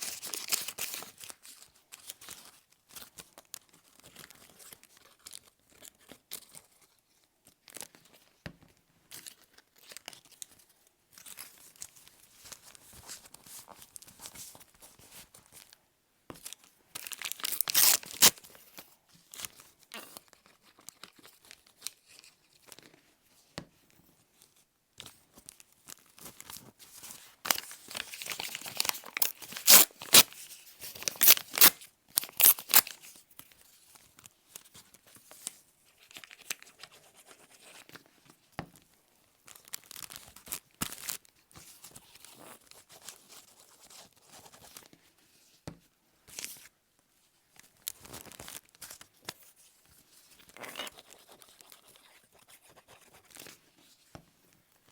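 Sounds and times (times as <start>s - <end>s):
paper tearing and crinkling: 17.0s - 18.4s, 27.5s - 33.1s.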